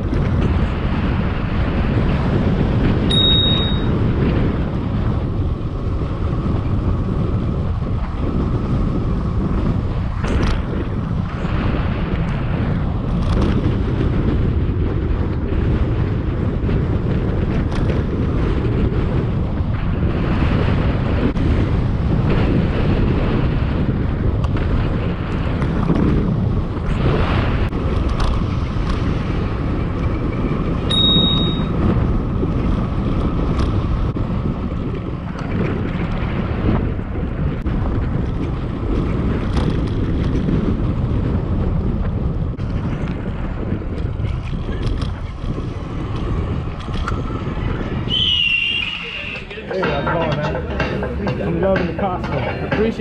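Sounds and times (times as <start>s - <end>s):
wind buffeting microphone: 0.0s - 53.0s
brief high beep: 3.1s - 3.9s, 30.9s - 31.8s.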